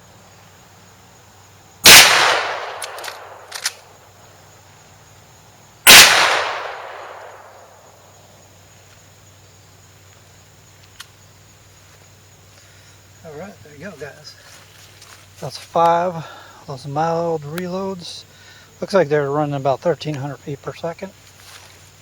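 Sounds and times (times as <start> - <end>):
rifle shot ringing out: 1.8 - 3.6, 5.9 - 7.7.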